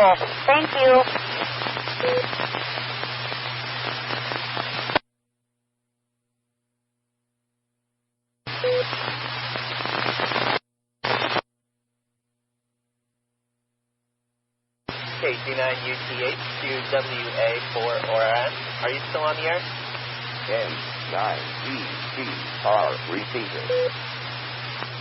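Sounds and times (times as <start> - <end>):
radio static hiss: 0.0 - 5.0, 8.5 - 11.4, 14.9 - 25.0.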